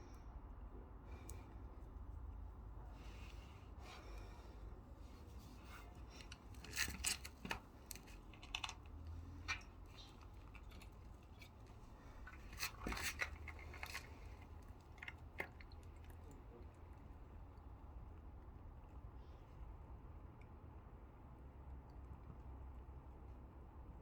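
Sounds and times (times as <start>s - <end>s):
low steady hum: 0.0s - 24.0s
clicks scrapes and rustles: 3.0s - 16.5s.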